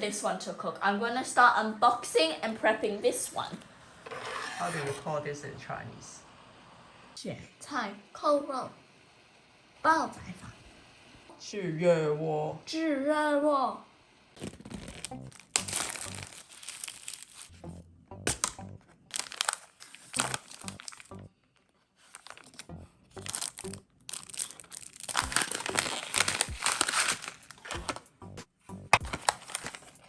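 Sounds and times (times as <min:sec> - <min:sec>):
plastic packaging crinkling: 0:14.4 - 0:17.5, 0:19.1 - 0:21.2, 0:22.0 - 0:28.1, 0:29.0 - 0:30.0
background music: 0:17.5 - 0:18.8, 0:25.2 - 0:30.0.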